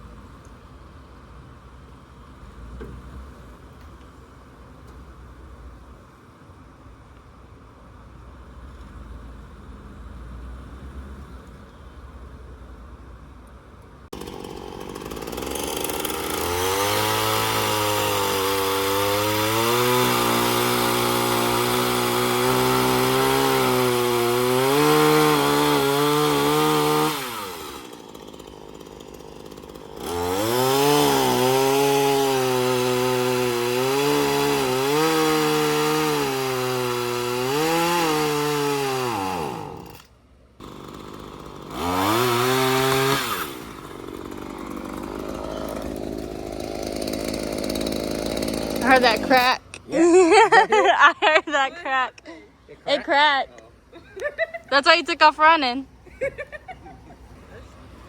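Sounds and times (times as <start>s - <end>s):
chainsaw cutting wood: 14.1s - 49.8s.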